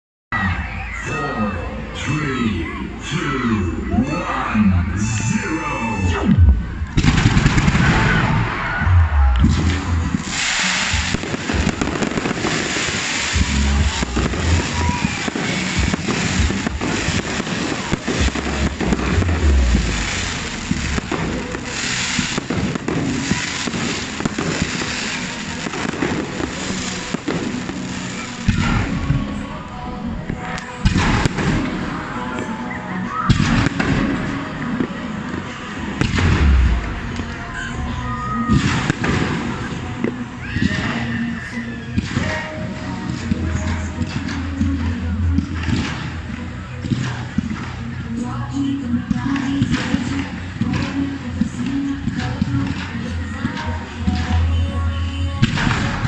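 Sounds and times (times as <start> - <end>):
music: 0.3 - 56.0
heavy low booms: 4.6 - 12.6, 13.3 - 24.6, 35.8 - 40.4
fireworks bangs: 5.9 - 41.1, 55.4 - 56.0.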